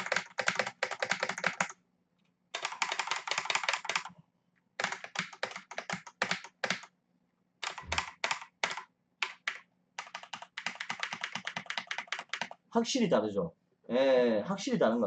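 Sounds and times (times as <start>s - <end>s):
mechanical keyboard typing: 0.0s - 1.7s, 2.5s - 4.1s, 4.8s - 6.9s, 7.6s - 12.6s.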